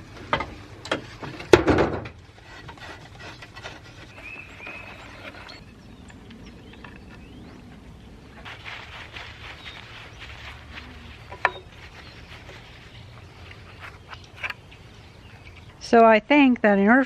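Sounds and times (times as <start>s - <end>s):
faint rubbing and handling: 2.2s - 5.6s, 8.4s - 14.8s.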